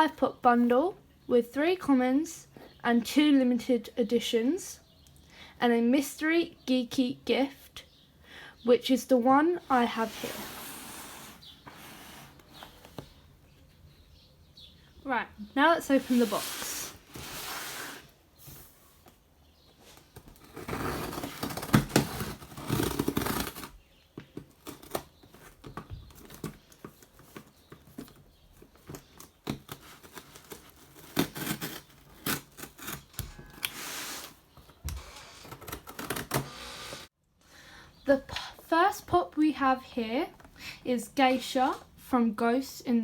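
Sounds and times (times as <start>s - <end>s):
tape and cardboard tearing: 19.9s - 37.1s.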